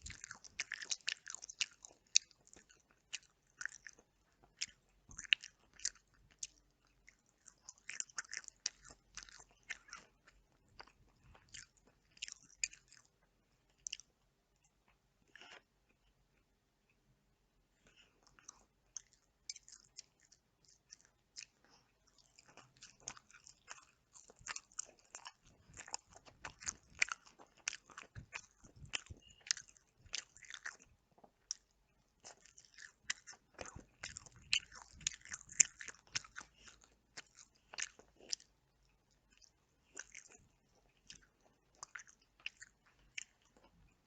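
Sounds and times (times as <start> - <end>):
chewing and biting chicken: 0.0 - 16.2, 17.8 - 44.0.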